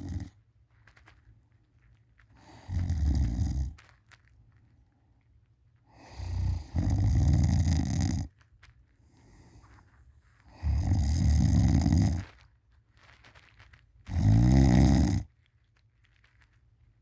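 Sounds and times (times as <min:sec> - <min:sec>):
person snoring: 0:00.0 - 0:00.3, 0:02.5 - 0:03.8, 0:06.0 - 0:08.3, 0:10.6 - 0:12.2, 0:14.1 - 0:15.2
faint breath: 0:05.9 - 0:06.8, 0:09.0 - 0:10.8.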